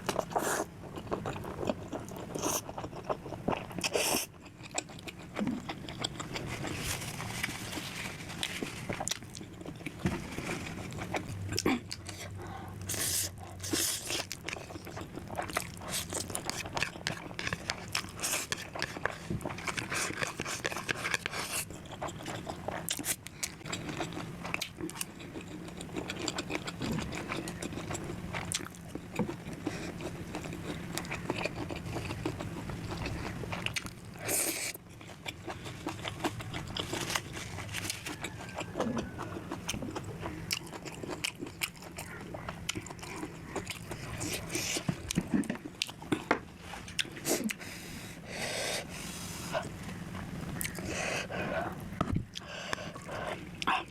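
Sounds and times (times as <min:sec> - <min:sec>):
person chewing and crunching food: 0:00.0 - 0:53.9
scraping sounds: 0:06.5 - 0:09.1.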